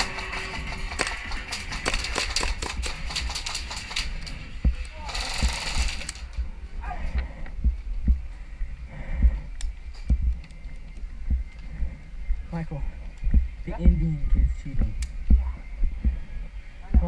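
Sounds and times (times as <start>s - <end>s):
airsoft gun firing rapid shots: 0.0s - 4.1s.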